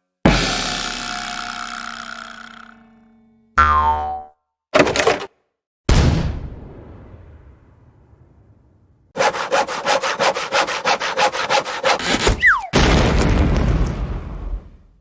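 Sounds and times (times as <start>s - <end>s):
hand saw cutting wood: 9.2s - 12.5s
falling whistle: 12.4s - 12.8s.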